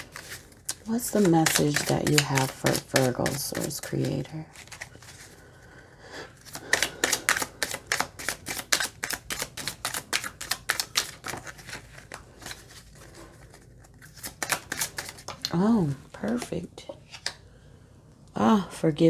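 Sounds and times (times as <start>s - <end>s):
cards being shuffled: 0.0s - 5.6s, 6.4s - 15.6s.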